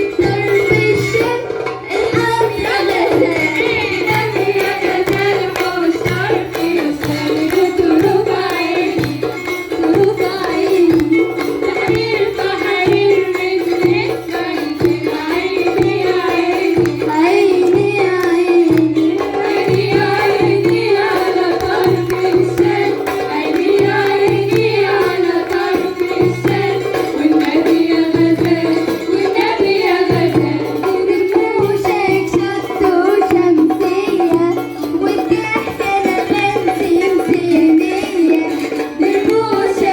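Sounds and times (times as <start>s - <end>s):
hand drum beat: 0.0s - 39.9s
woman singing: 0.0s - 39.9s
plucked lyre melody: 2.5s - 14.0s.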